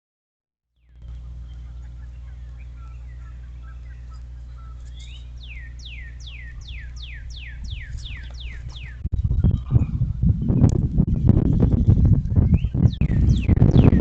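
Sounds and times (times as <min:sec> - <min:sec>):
songbird whistling: 0:00.8 - 0:09.1, 0:11.2 - 0:14.0
faint bird chirps: 0:00.8 - 0:14.0
steady low hum: 0:00.8 - 0:14.0.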